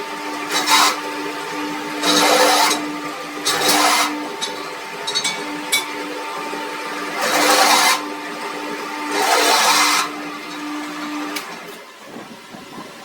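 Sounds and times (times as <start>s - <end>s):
power tool humming: 0.0s - 11.8s.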